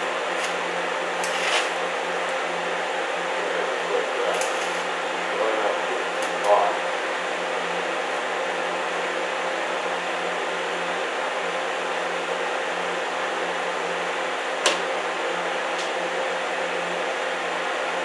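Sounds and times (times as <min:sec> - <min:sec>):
welding arc sizzling: 0:00.0 - 0:02.5, 0:03.6 - 0:05.3, 0:06.0 - 0:06.8
welding pops: 0:04.3 - 0:04.9.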